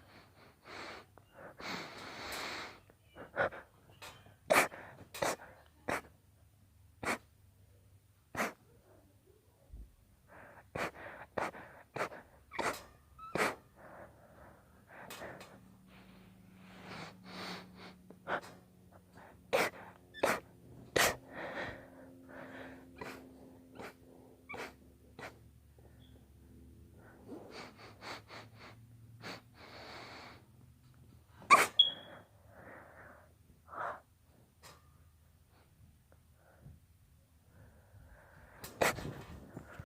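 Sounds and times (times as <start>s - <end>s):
girl sniffing: 0.0s - 3.8s, 4.5s - 6.1s, 7.0s - 7.3s, 8.4s - 8.7s, 10.4s - 25.4s, 31.4s - 34.1s, 38.2s - 39.8s
girl sneezing: 4.5s - 6.0s, 8.4s - 8.6s.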